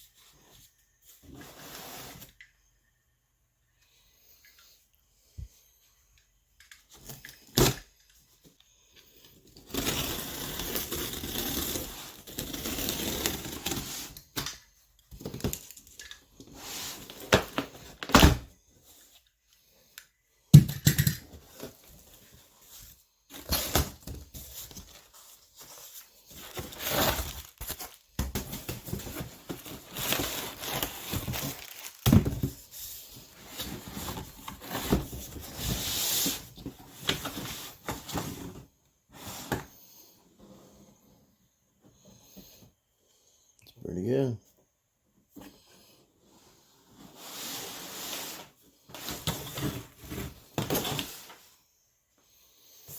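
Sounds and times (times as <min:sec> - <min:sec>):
cardboard tearing and crinkling: 0:09.6 - 0:14.2, 0:26.3 - 0:32.6.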